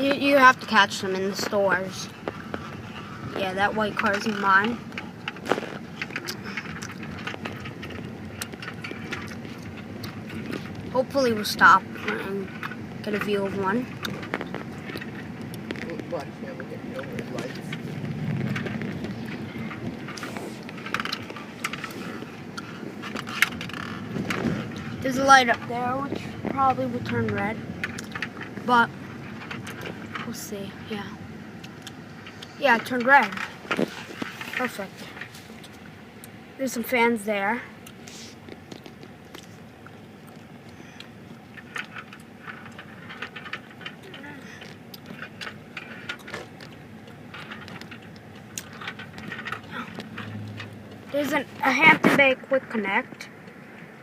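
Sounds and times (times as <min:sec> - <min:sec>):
car driving rumble: 0:00.0 - 0:54.0.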